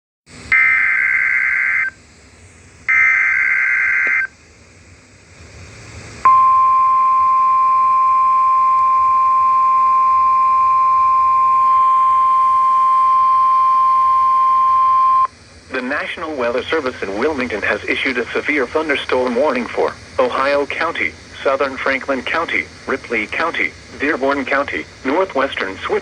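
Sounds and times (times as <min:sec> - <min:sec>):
faint radio hiss: 0:00.3 - 0:26.0
buzzy data bursts: 0:00.5 - 0:02.0, 0:02.9 - 0:04.3, 0:15.1 - 0:26.0
steady alarm tone: 0:00.5 - 0:02.0, 0:02.9 - 0:04.3, 0:06.3 - 0:15.3.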